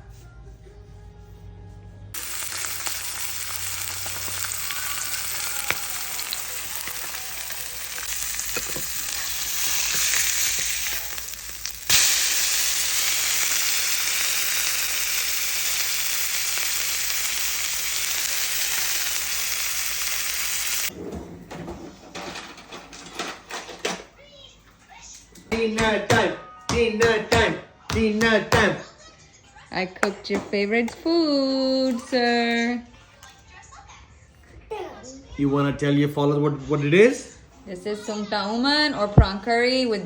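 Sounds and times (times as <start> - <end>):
food sizzling in hot oil: 2.2 - 20.9.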